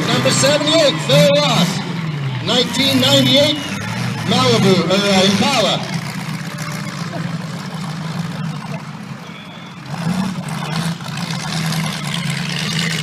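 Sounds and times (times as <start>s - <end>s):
car engines running: 0.0s - 13.0s
short high beep: 9.2s - 9.8s.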